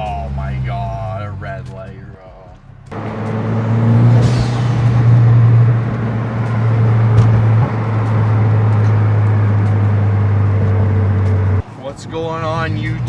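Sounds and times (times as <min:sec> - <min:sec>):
car engine drone: 0:00.0 - 0:13.0
road hiss: 0:02.9 - 0:13.0.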